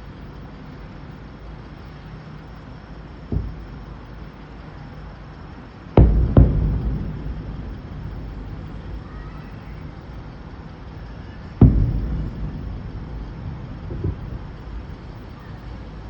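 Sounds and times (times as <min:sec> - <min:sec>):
fireworks booming: 0:03.3 - 0:04.1, 0:06.0 - 0:16.0
low rolling echo: 0:03.3 - 0:04.6, 0:05.6 - 0:16.0.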